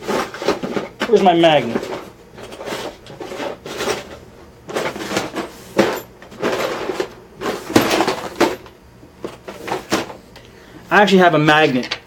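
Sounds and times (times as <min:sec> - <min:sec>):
hard objects scraping and rattling: 0:00.0 - 0:10.2.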